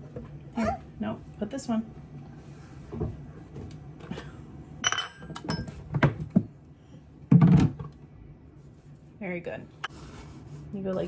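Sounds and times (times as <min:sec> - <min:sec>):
utensils clinking on mixing bowl: 0:04.8 - 0:05.8.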